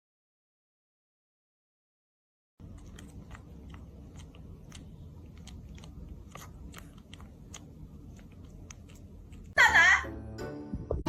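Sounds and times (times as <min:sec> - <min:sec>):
animal chewing crunchy food: 0:02.6 - 0:09.6
low steady hum: 0:02.6 - 0:11.0.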